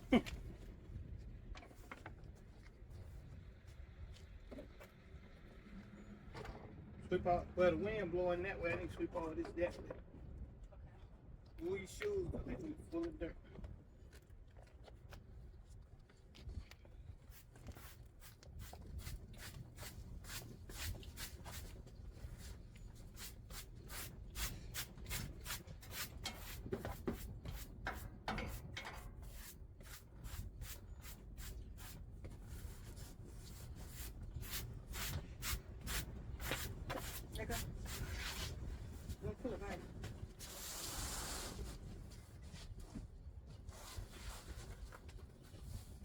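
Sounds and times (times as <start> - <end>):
broom sweeping sand: 17.8 - 21.8, 23.0 - 27.8, 29.2 - 32.0, 32.6 - 38.6, 40.4 - 41.8.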